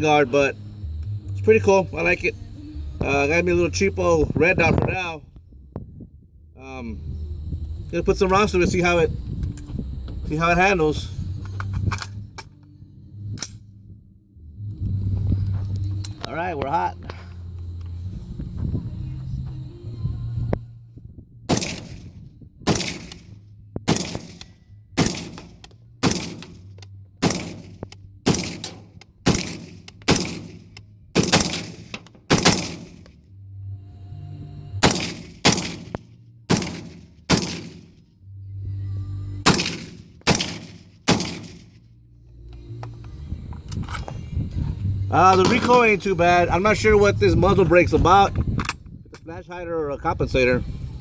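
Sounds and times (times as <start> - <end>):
rifle shots: 21.5 - 22.1, 22.7 - 23.3, 23.9 - 33.1, 34.8 - 37.9, 39.4 - 41.8.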